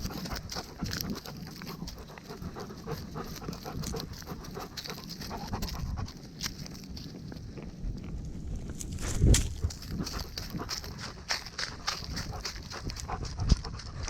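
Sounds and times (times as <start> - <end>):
dog panting: 0.0 - 14.0
rustles and footfalls: 0.0 - 14.0.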